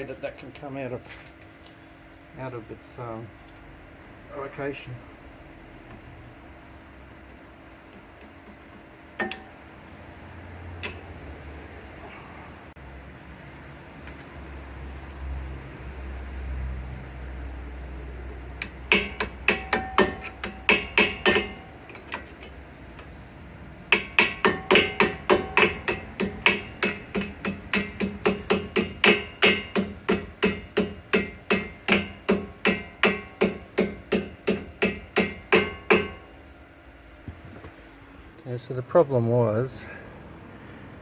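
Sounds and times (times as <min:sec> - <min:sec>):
hammer tapping metal pin: 0:09.2 - 0:09.5, 0:18.6 - 0:22.3, 0:23.9 - 0:36.3.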